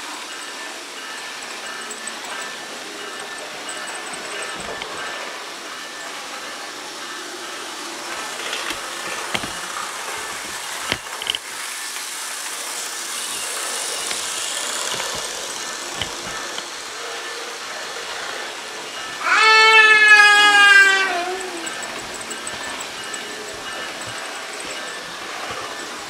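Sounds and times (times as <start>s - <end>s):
model train whirring: 0.0s - 26.0s
sharp clicks: 21.4s - 26.0s.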